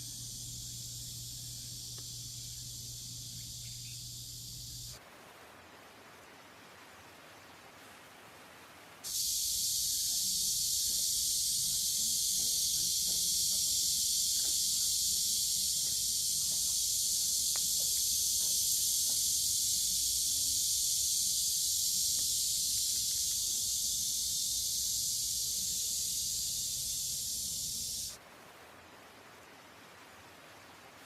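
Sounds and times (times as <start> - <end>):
loud high-pitched hiss: 0.0 - 5.0, 9.0 - 28.2
faint outdoor rustling: 9.1 - 27.1.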